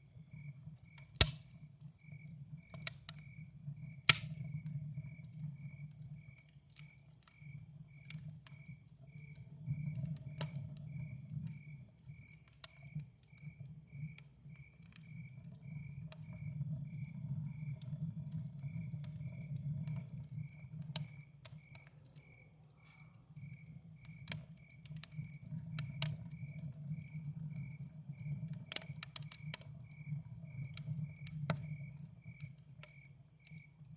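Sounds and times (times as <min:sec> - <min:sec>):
cricket chirping: 0:00.0 - 0:33.9
campfire crackling and popping: 0:00.8 - 0:33.9.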